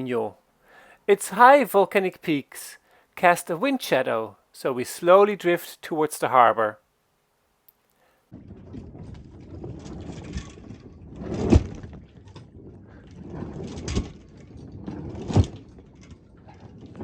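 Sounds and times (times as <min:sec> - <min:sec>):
water sloshing along boat hull: 0:08.4 - 0:17.0.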